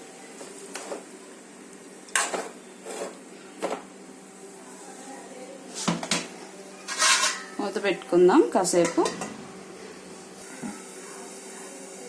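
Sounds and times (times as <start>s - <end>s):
metal utensil scraping a pan: 2.1s - 3.8s, 6.9s - 7.6s.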